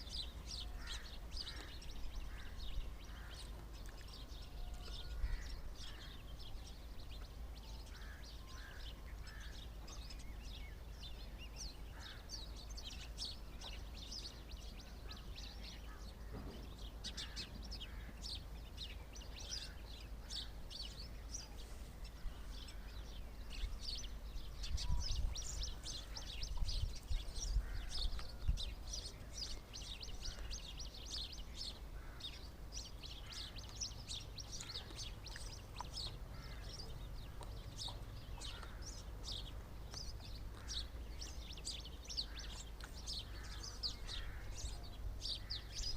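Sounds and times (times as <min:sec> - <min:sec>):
small birds chirping: 0:00.0 - 0:45.9.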